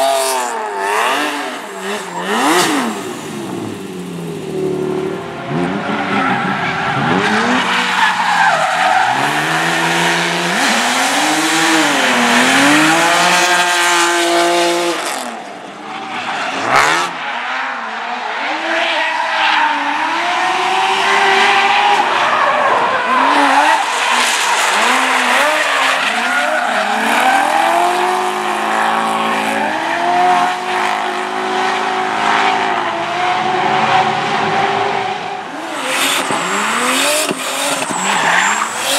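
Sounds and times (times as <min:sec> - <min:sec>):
car engines revving: 0:00.0 - 0:38.9
tire squeal: 0:05.5 - 0:13.6, 0:15.0 - 0:38.9.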